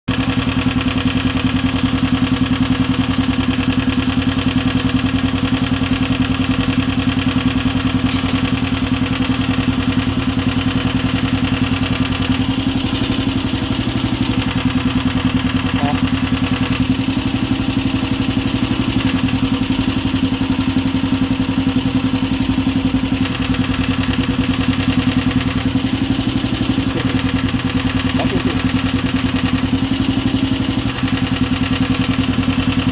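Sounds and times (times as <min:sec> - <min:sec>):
motorcycle engine idling: 0:00.1 - 0:32.9
engine top end noise: 0:08.0 - 0:08.6.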